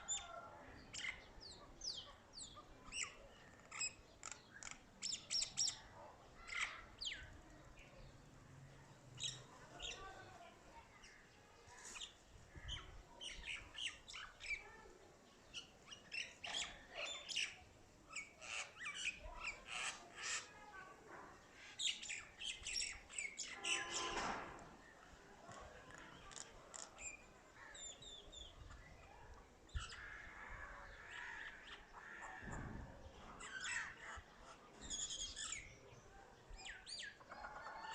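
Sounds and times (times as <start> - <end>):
mynah bird chirping and squawking: 1.0 - 7.3, 15.6 - 20.6, 33.4 - 35.8.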